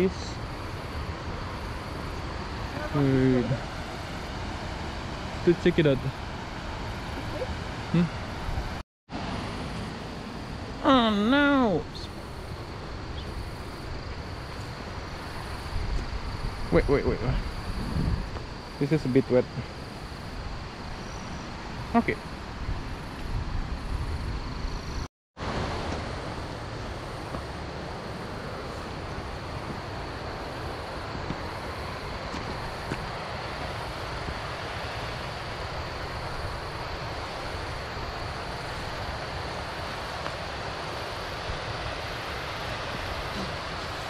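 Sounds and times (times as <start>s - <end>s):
flowing water rushing: 25.4s - 44.0s.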